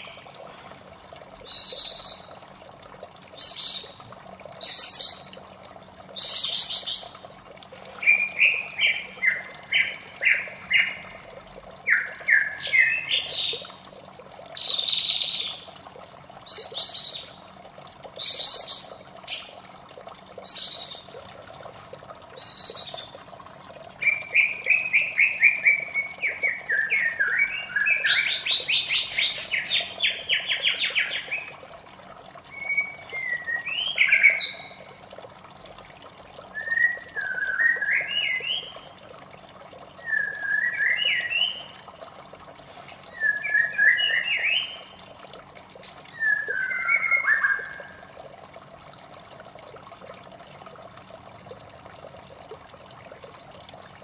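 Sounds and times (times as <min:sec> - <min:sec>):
flowing water: 0:00.0 - 0:54.0
bird singing: 0:36.6 - 0:38.8, 0:40.0 - 0:41.8, 0:42.9 - 0:44.8.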